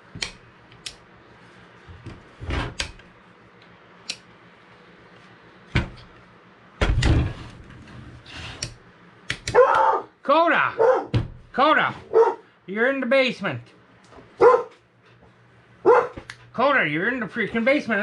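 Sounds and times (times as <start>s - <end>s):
heavy thump: 11.1s - 11.4s.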